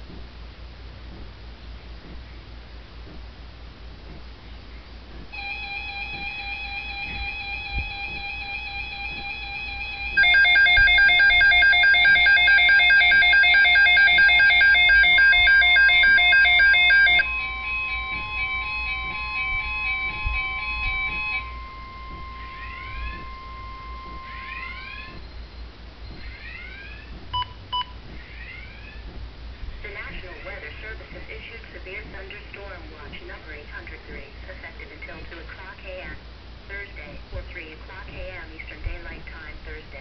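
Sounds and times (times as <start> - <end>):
steady single-pitch alert tone: 5.3 - 29.0
loud rapid beeping: 5.4 - 26.8.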